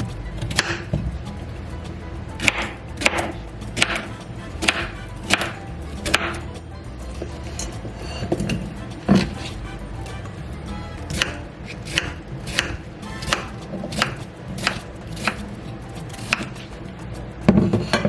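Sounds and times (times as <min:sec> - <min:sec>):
knife chopping on cutting board: 0:02.4 - 0:06.4, 0:11.0 - 0:15.4, 0:16.1 - 0:16.7.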